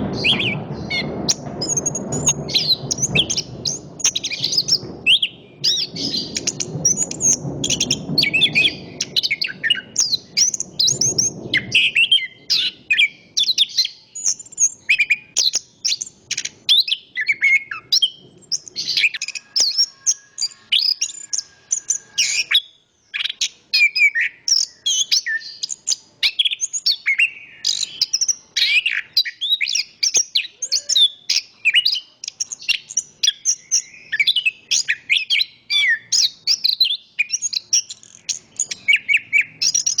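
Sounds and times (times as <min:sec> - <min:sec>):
low wind rush: 0:00.0 - 0:13.4.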